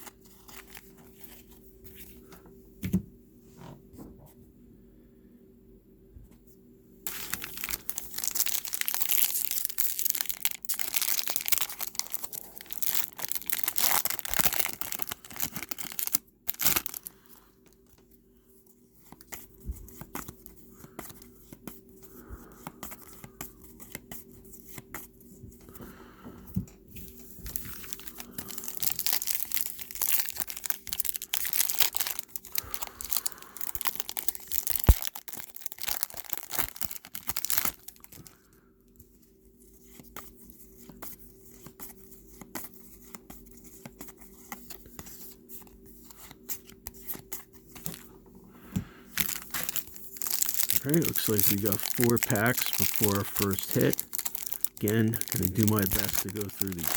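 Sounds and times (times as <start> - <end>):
foil wrappers crinkling: 0.0 - 1.5, 7.1 - 17.9, 27.1 - 38.4, 49.1 - 56.9
faint steady hum: 0.0 - 56.9
cards handled: 49.2 - 56.9.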